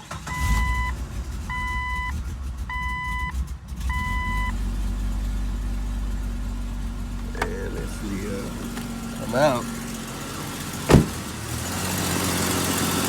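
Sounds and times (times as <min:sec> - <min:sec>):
car engine starting and idling: 0:00.0 - 0:13.0
dashboard warning chime beeping: 0:00.3 - 0:00.9, 0:01.5 - 0:04.6.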